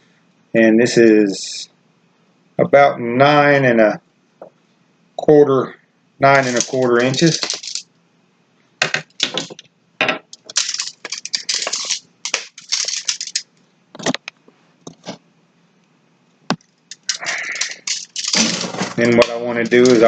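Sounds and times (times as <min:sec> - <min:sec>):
materials rustling and crinkling: 0:06.3 - 0:07.8, 0:10.3 - 0:15.2, 0:16.5 - 0:20.0.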